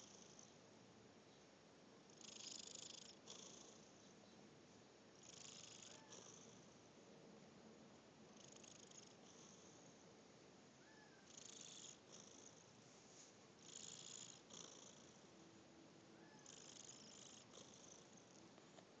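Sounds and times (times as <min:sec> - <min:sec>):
pet snoring softly: 0:00.0 - 0:00.6, 0:02.1 - 0:04.0, 0:05.2 - 0:06.8, 0:08.3 - 0:10.0, 0:11.0 - 0:12.8, 0:13.6 - 0:15.3, 0:16.2 - 0:18.9.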